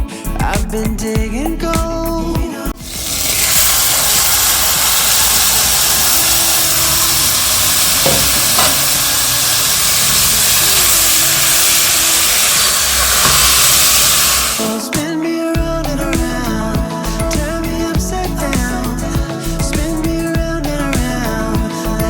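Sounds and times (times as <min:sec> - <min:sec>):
loud hissing noise: 0:02.8 - 0:15.1.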